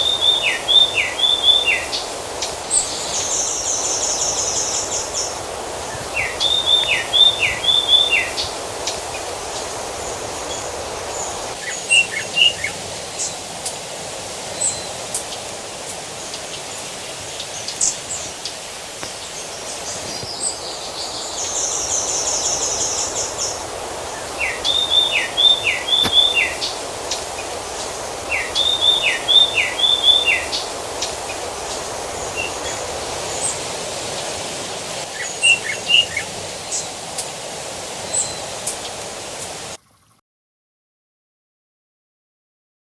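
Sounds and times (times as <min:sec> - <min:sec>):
songbirds singing: 0:00.0 - 0:13.8, 0:14.5 - 0:37.3, 0:38.0 - 0:40.2
irrigation water rushing: 0:00.0 - 0:40.1.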